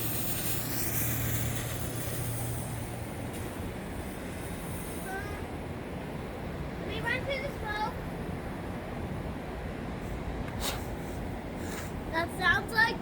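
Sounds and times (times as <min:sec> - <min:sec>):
smoke firework hissing: 0:00.0 - 0:05.7, 0:10.0 - 0:12.4.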